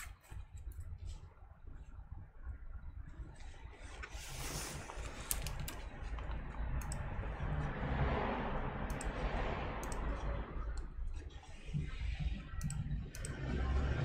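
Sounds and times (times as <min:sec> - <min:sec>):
low steady hum: 0:00.0 - 0:14.0
laptop keys clicking: 0:04.9 - 0:07.1, 0:08.9 - 0:09.2.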